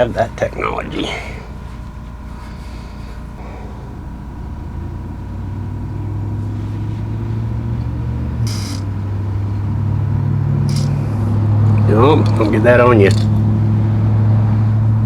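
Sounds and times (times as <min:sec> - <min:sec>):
motor humming: 0:00.0 - 0:15.0
short hiss: 0:08.4 - 0:08.9.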